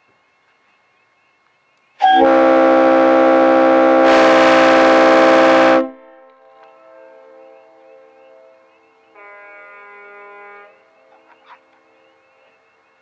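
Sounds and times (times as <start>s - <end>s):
air horn chord: 2.0s - 6.3s, 9.1s - 10.9s
faint echo of horn: 2.0s - 6.3s, 9.1s - 10.9s.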